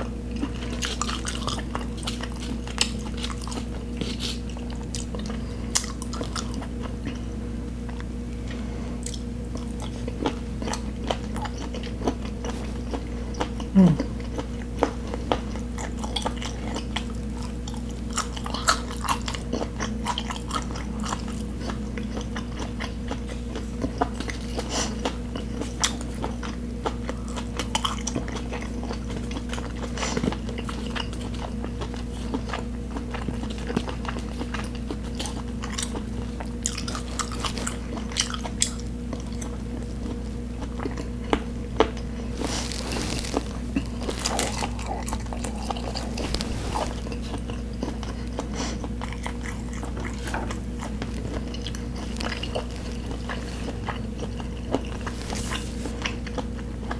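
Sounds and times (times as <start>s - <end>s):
person chewing food: 0.0s - 56.9s
steady low hum: 35.1s - 56.9s.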